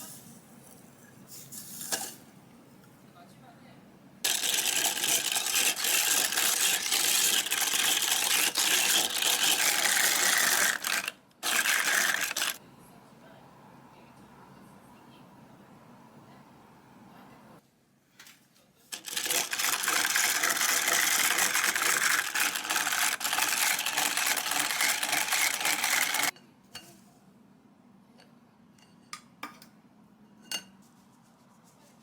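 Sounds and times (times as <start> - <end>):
electric kitchen appliance running: 4.3 - 12.6, 18.9 - 26.3.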